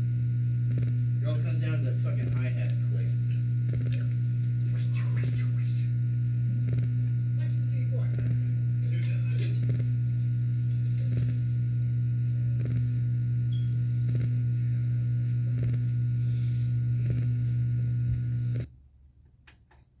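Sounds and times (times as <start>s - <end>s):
loud electrical hum: 0.0s - 18.8s
faint ticks: 5.9s - 18.7s.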